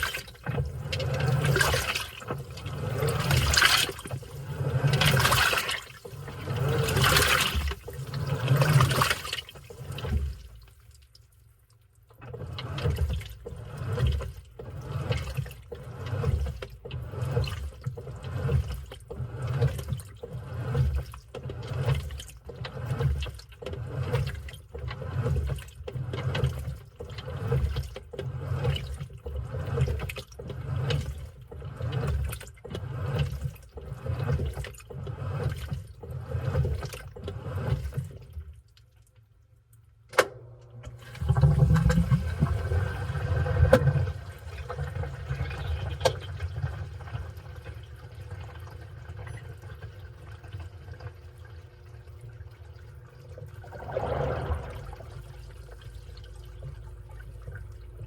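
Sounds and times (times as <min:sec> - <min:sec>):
water rushing through machine: 0:00.0 - 0:11.1, 0:12.1 - 0:38.6, 0:40.7 - 0:58.0
washing machine water sloshing: 0:00.0 - 0:58.0.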